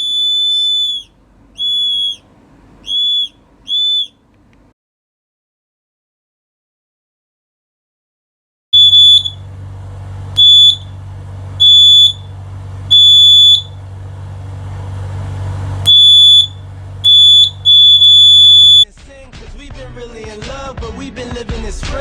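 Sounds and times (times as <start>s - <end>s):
high-pitched alarm buzzer beeps: 8.8s - 9.4s, 10.4s - 10.9s, 11.6s - 12.3s, 12.9s - 13.8s, 15.9s - 18.9s
low steady hum: 8.8s - 18.9s.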